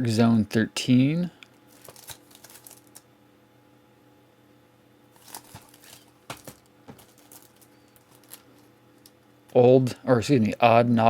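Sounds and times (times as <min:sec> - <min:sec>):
plastic cases clicking and rustling: 0:01.7 - 0:03.0, 0:05.2 - 0:09.1.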